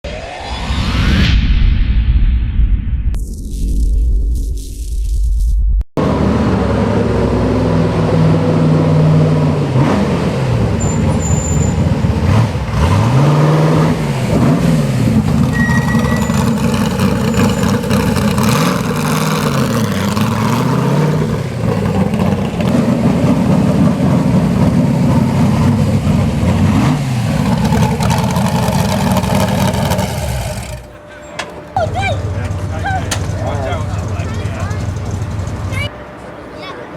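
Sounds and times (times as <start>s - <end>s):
car engine revving: 6.0s - 31.0s, 32.3s - 35.9s.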